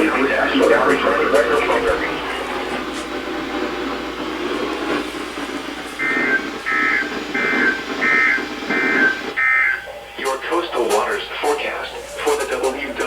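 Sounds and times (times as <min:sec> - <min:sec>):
radio hiss: 0:00.0 - 0:13.0.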